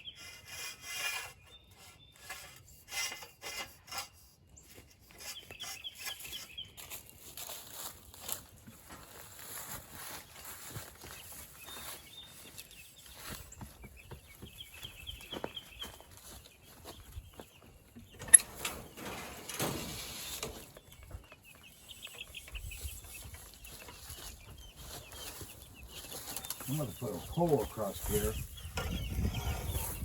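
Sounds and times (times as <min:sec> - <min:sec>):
chickens peeping and clucking: 0:08.8 - 0:30.0.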